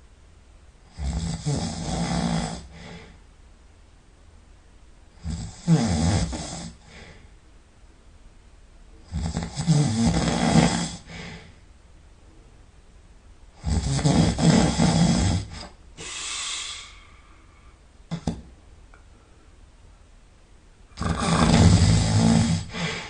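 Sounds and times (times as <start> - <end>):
person snoring loudly: 0.9 - 3.0, 5.2 - 6.8, 9.1 - 11.2, 13.6 - 17.0, 21.0 - 23.0
soft breath: 2.6 - 3.3, 6.8 - 7.4, 11.0 - 11.7, 15.5 - 17.9, 19.0 - 19.7, 22.5 - 23.0.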